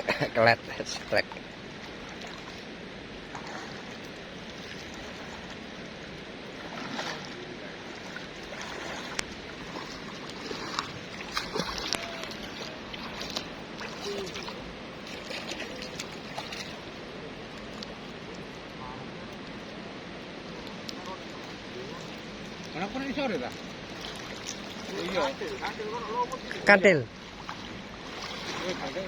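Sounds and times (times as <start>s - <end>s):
river water rushing: 0.0s - 29.0s
short splashes: 3.3s - 5.6s, 6.5s - 17.9s, 20.6s - 29.0s.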